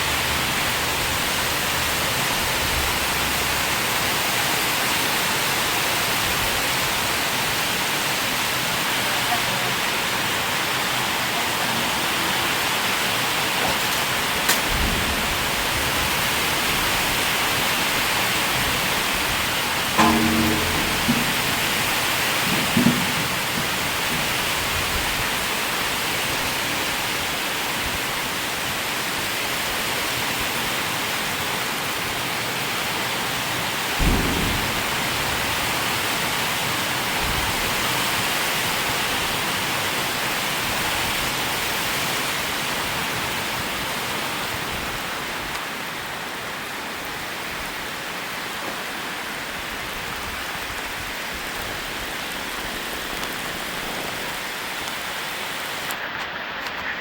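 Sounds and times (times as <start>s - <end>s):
heavy rain: 0.0s - 57.0s
short low thump: 20.0s - 24.3s.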